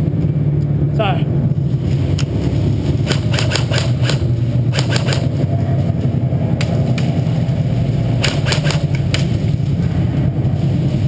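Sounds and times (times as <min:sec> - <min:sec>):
steady low rumble: 0:00.0 - 0:11.0
airsoft guns firing: 0:03.1 - 0:05.3, 0:08.2 - 0:08.9.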